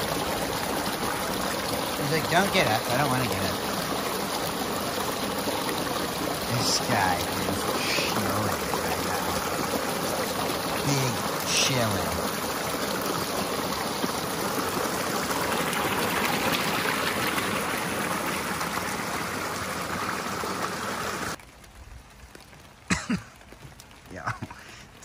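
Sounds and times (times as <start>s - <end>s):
shallow river water trickling: 0.0s - 25.0s.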